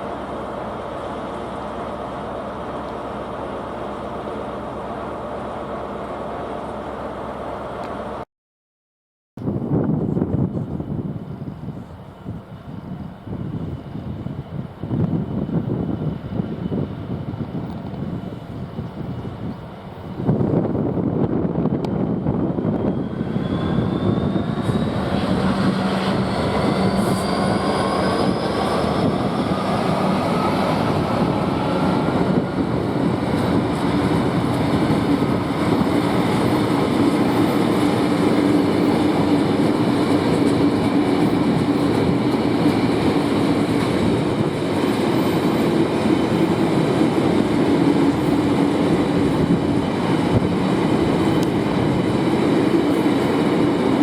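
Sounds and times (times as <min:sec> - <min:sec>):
freight train rumbling past: 0:00.0 - 0:08.2, 0:09.5 - 0:54.0
rising whine: 0:21.7 - 0:43.0.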